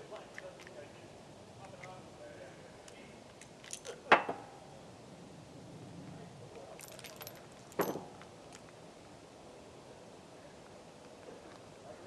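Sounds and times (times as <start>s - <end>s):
revolver metallic clicks and clinks: 6.6s - 8.7s.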